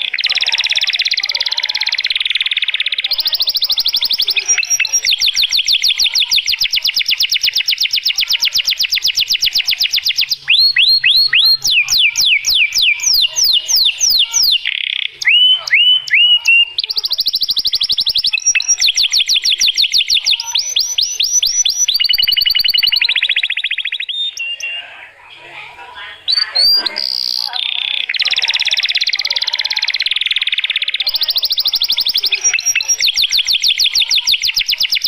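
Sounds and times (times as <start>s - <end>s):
canary singing trills: 0.0s - 35.0s.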